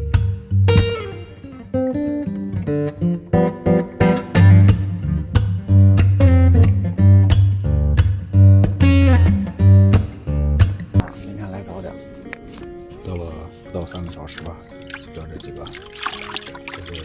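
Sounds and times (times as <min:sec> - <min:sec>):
steady bass: 0:00.0 - 0:01.3, 0:04.0 - 0:11.1
acoustic guitar: 0:00.0 - 0:17.0.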